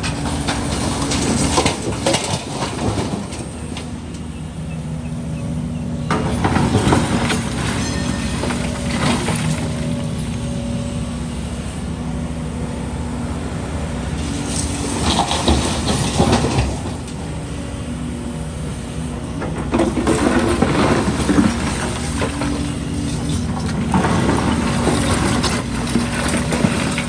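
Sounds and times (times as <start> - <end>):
concrete rubble crunching and clattering: 0.0 - 4.1, 6.1 - 10.3, 14.8 - 17.2, 19.4 - 27.0
excavator diesel engine running: 0.0 - 27.0.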